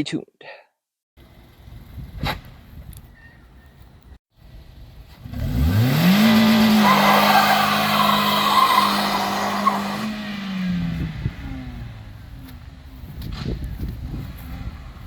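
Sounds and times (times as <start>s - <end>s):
car engine revving: 5.1s - 12.8s
tyres squealing: 6.6s - 10.1s.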